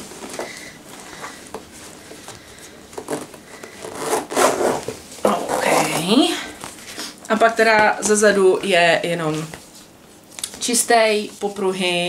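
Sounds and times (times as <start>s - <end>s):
leather rubbing and scraping: 0.0s - 6.4s.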